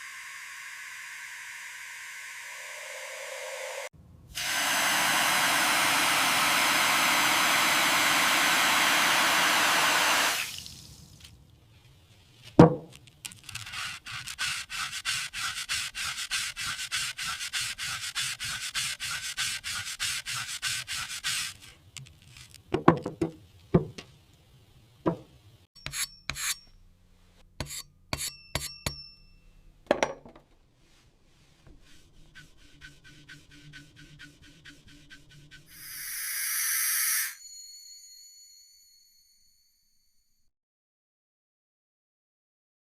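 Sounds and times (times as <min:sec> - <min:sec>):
loud steady hiss: 0:00.0 - 0:10.5
rhythmic rubbing on rusty metal: 0:13.8 - 0:21.6, 0:27.6 - 0:29.0, 0:31.7 - 0:36.6
sharp metal knocks and clinks: 0:28.1 - 0:30.4.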